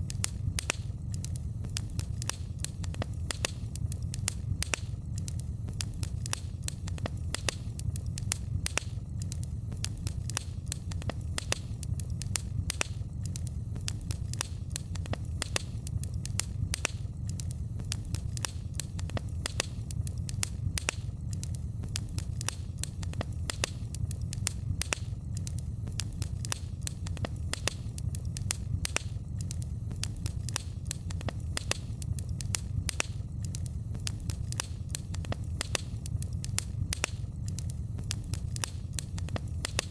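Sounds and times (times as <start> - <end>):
low rumble of flames: 0.0 - 39.9
wood fire crackling and popping: 0.0 - 39.9.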